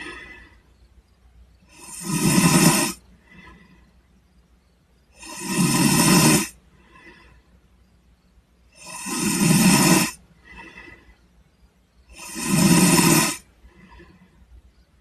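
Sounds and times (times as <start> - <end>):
person snoring: 0.0 - 0.6, 1.6 - 3.7, 5.1 - 7.3, 8.7 - 11.1, 12.1 - 14.2
faint breath: 0.0 - 1.9, 2.6 - 15.0.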